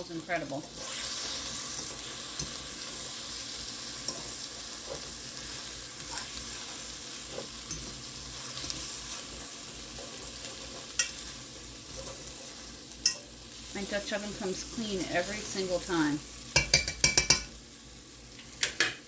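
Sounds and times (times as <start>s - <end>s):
food sizzling in a pot: 0.0s - 19.0s
utensil clicking against pot: 16.6s - 17.5s, 18.4s - 19.0s.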